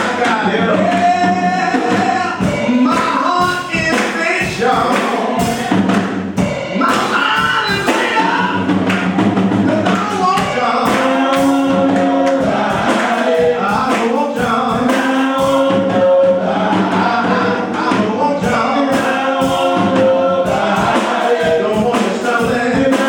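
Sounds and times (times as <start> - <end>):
gospel choir singing: 0.0 - 23.0
instrumental accompaniment: 0.0 - 23.0
steady percussive beat: 0.0 - 23.0.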